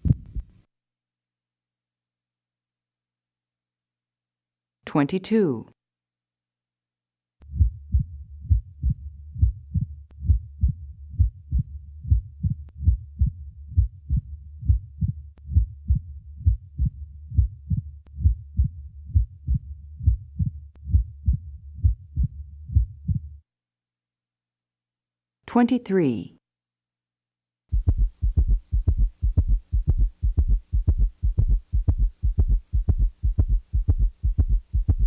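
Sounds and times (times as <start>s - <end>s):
heartbeat through stethoscope: 0.0s - 0.6s, 7.5s - 23.4s, 27.7s - 35.0s.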